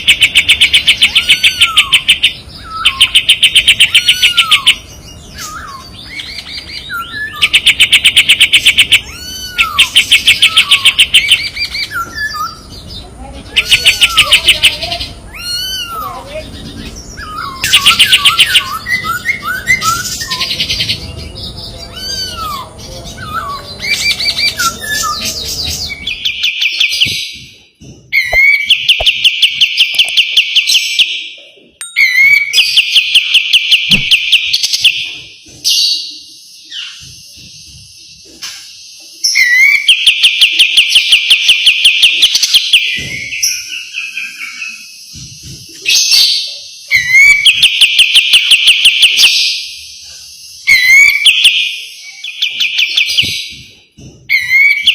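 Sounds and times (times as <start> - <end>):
songbird chirps and whistles: 0.0 - 27.6, 28.2 - 53.7.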